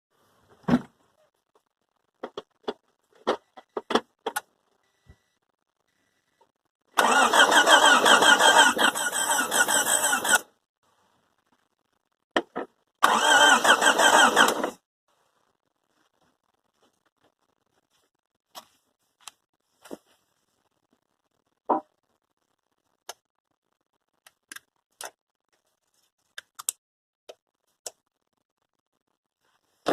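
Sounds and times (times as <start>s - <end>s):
engine cranking on starter: 7.0s - 10.4s, 13.0s - 14.8s.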